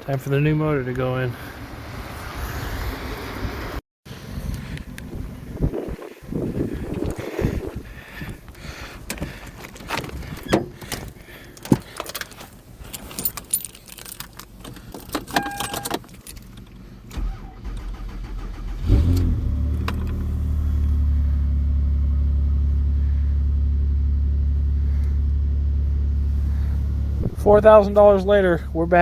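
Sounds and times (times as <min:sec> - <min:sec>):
car engine cranking and idling: 0:04.2 - 0:29.0
keys jangling: 0:09.1 - 0:16.7.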